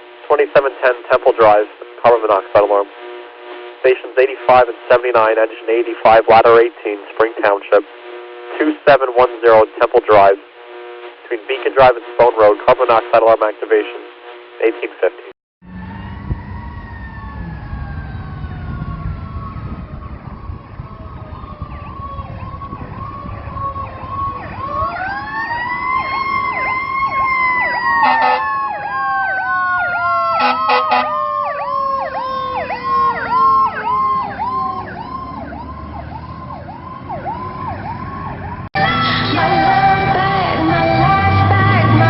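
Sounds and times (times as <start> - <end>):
siren winding up: 15.6 - 38.6
siren tone falling: 15.6 - 38.8
electronic siren yelping: 15.6 - 42.0
truck engine rumble: 15.6 - 42.0
short horn blasts: 28.0 - 28.4, 30.4 - 31.1.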